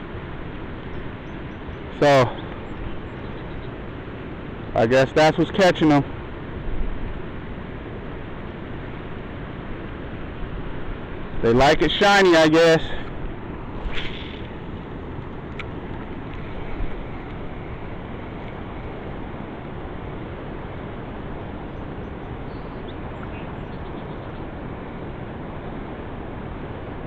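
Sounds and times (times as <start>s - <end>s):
river water flowing: 0.0s - 27.0s
wind on microphone: 13.0s - 27.0s.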